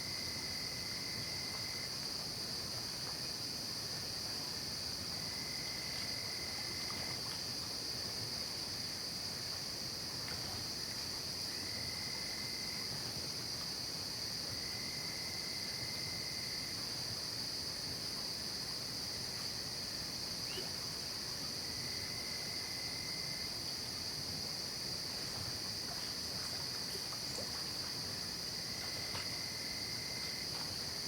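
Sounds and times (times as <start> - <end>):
lower insect trill: 18.2 - 31.0.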